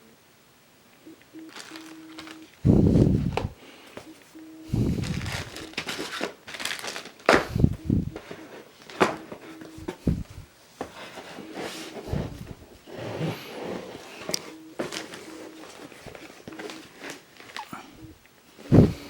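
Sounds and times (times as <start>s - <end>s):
packaging rustling and crinkling: 1.4s - 3.6s, 4.7s - 17.8s
low thumps: 7.4s - 8.2s.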